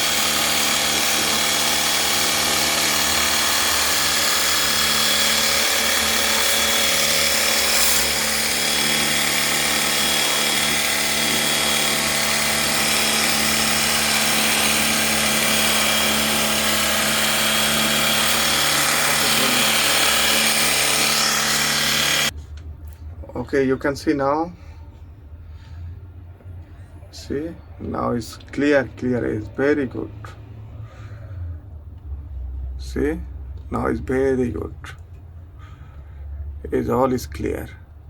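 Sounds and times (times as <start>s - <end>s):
electric pump motor running: 0.0s - 22.3s.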